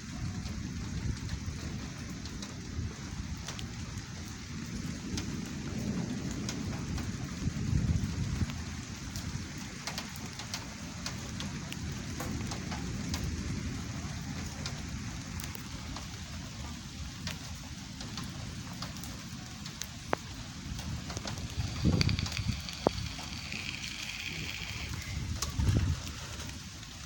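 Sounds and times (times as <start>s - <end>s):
low rumble of thunder: 0.0s - 27.0s
steady rain falling: 0.0s - 27.0s
drops ticking close by: 20.1s - 25.8s.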